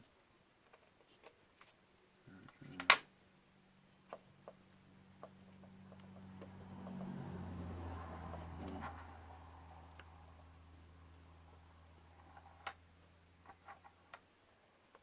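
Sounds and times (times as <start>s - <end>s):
small parts clicking and tapping: 0.0s - 1.8s, 3.9s - 7.2s
low steady hum: 2.0s - 14.9s.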